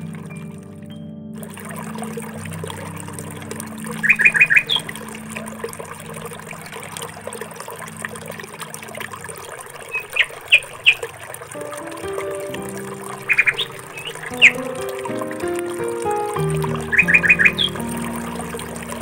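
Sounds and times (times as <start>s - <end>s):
small bird chirping: 13.3s - 14.7s.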